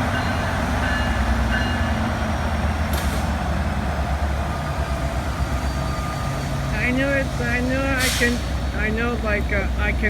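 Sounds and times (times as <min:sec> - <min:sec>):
diesel locomotive rumbling: 0:00.0 - 0:10.0.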